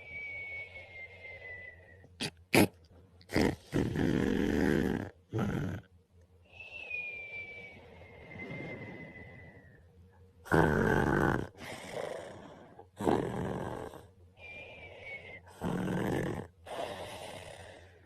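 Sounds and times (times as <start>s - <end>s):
man snoring: 3.3s - 5.9s, 10.4s - 14.1s, 15.5s - 17.9s.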